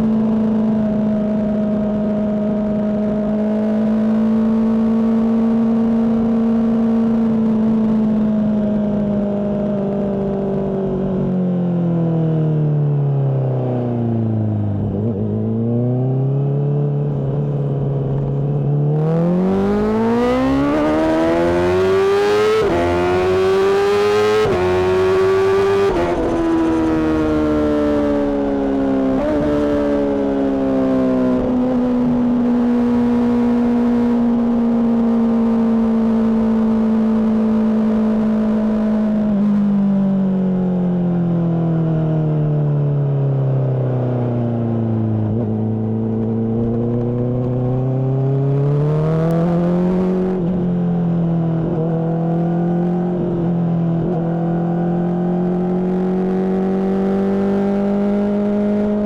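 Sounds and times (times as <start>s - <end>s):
motorcycle engine revving: 13.5s - 40.7s, 43.4s - 59.0s.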